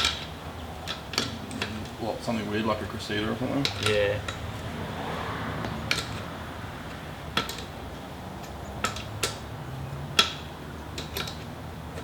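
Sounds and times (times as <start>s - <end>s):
metal tools clicking and clinking: 3.2s - 4.4s, 5.8s - 6.3s, 7.4s - 7.7s, 10.2s - 12.0s.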